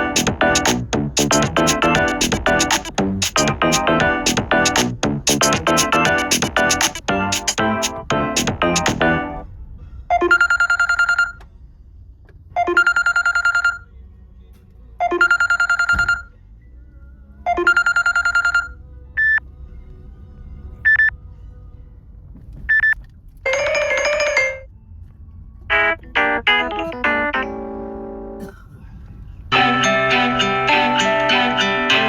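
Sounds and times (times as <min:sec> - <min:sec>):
trilling electronic ringtone: 0:10.1 - 0:11.4, 0:12.6 - 0:13.8, 0:15.0 - 0:16.3, 0:17.5 - 0:19.4, 0:23.5 - 0:24.7.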